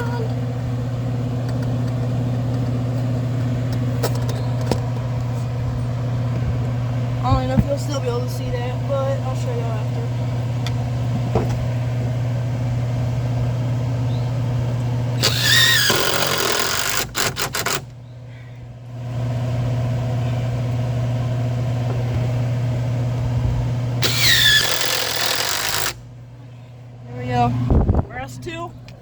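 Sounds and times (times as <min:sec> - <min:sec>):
engine humming: 0:00.0 - 0:29.0
power driver whirring: 0:15.2 - 0:18.0, 0:23.9 - 0:26.0.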